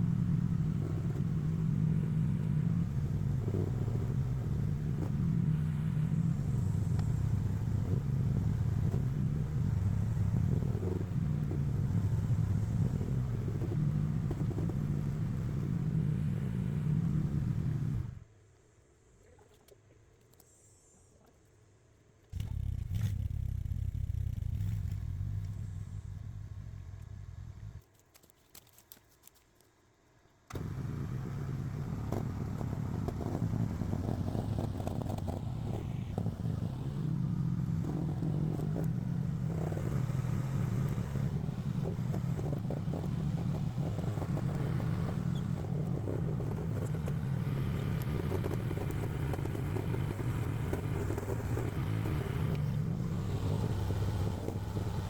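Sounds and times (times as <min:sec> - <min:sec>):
excavator engine running: 0:22.3 - 0:27.8, 0:30.5 - 0:55.0.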